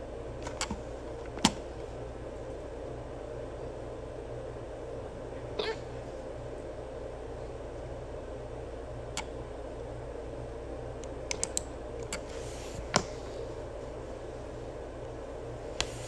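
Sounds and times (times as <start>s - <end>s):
steady background hum: 0.0s - 16.0s
small clicks: 11.0s - 12.3s.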